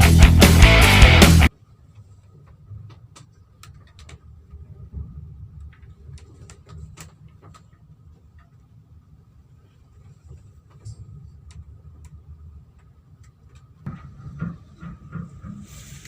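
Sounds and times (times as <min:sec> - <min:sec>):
ship engine rumble: 0:02.1 - 0:16.0
light clicks and ticks: 0:10.0 - 0:13.8.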